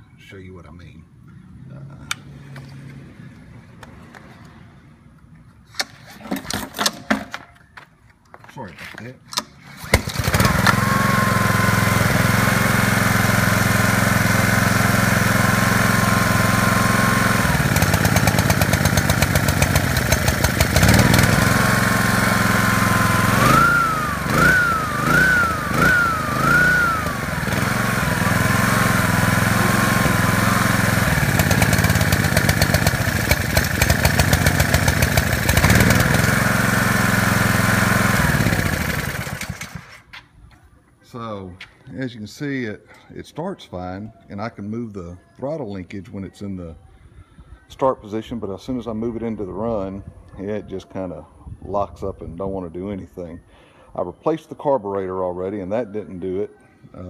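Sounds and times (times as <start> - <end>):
pressure washer engine running: 9.8 - 40.0.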